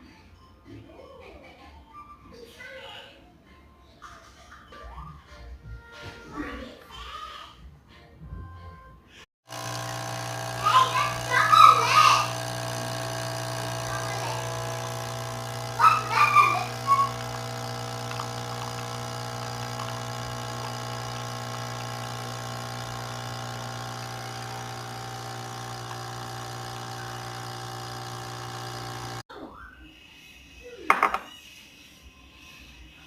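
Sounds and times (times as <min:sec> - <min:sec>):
coffee machine pump humming: 0:09.5 - 0:29.2.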